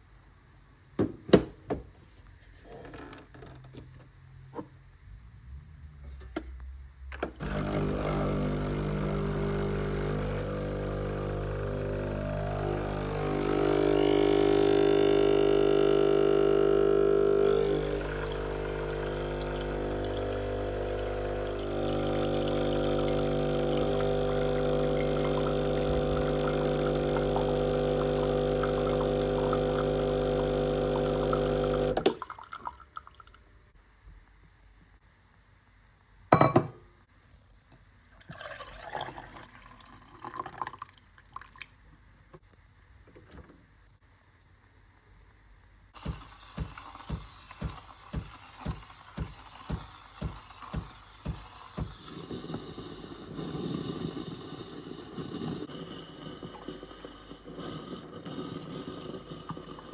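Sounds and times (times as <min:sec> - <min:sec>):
espresso machine pump humming: 0:07.4 - 0:32.3, 0:46.0 - 0:59.9.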